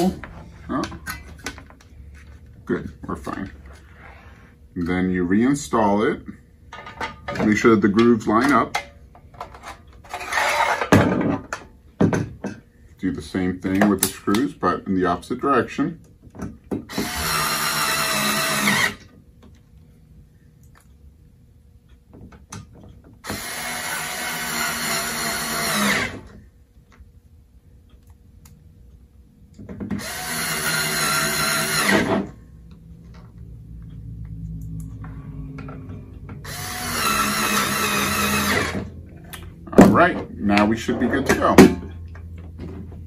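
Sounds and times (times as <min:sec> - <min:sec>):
electric screwdriver whine: 0:16.9 - 0:19.1, 0:23.2 - 0:26.2, 0:30.0 - 0:32.3, 0:36.4 - 0:38.9.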